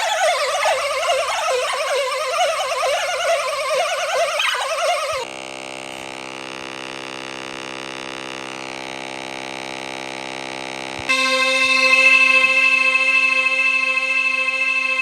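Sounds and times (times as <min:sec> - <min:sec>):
vocoder drone of stacked tones: 0:00.0 - 0:05.2
bright held synth chord: 0:11.0 - 0:15.0.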